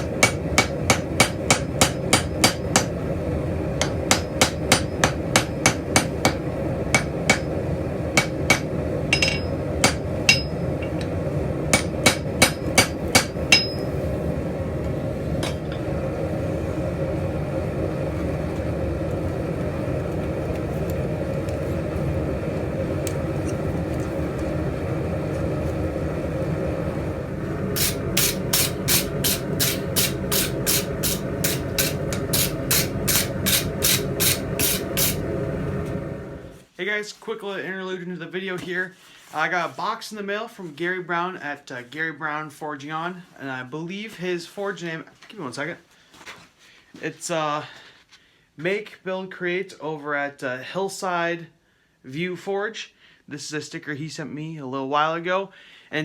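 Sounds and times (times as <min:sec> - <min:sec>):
hammer blows on steel anvil: 0:00.0 - 0:02.9, 0:08.2 - 0:11.0, 0:11.8 - 0:13.9, 0:27.8 - 0:35.2
steady hum: 0:00.0 - 0:36.7.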